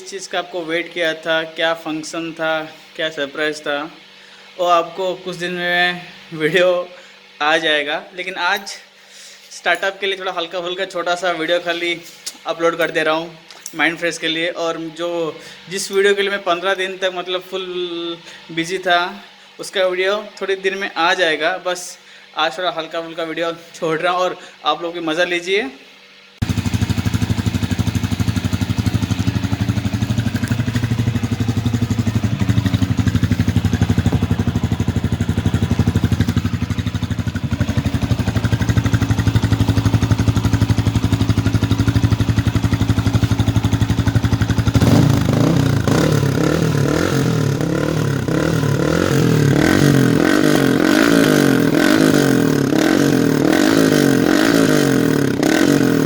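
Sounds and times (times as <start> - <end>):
motorcycle engine idling: 26.4 - 56.0
motorcycle engine revving: 26.4 - 56.0.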